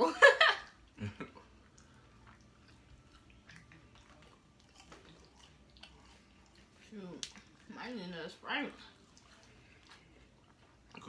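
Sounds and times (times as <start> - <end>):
chewing and crunching: 0.7 - 11.0.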